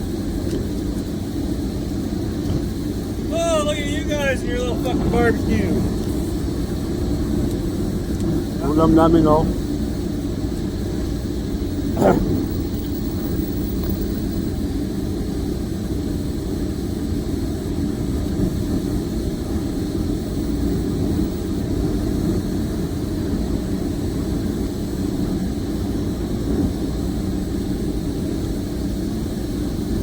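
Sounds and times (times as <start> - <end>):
construction machinery engine rumble: 2.3 - 9.8.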